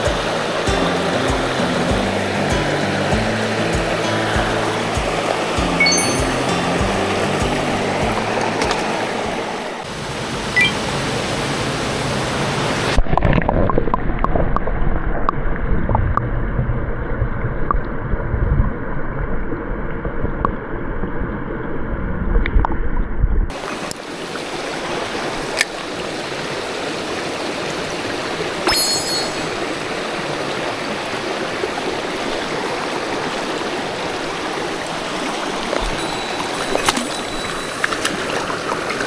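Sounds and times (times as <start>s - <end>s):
stream water rushing: 0.0s - 13.0s, 23.5s - 39.0s.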